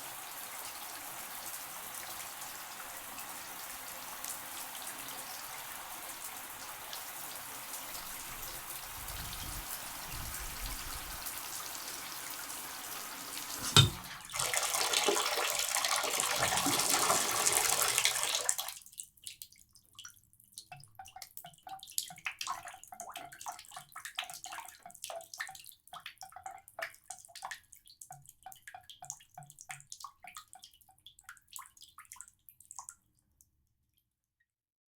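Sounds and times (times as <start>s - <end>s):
shower spray running: 7.9s - 14.2s, 16.2s - 18.6s
water dripping: 13.4s - 34.0s
sharp knock: 13.6s - 14.0s.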